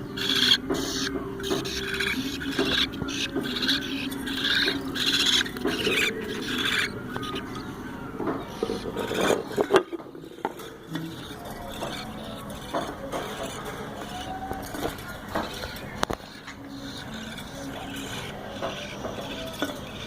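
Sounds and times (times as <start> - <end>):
parrot chick begging calls: 0.1 - 7.7.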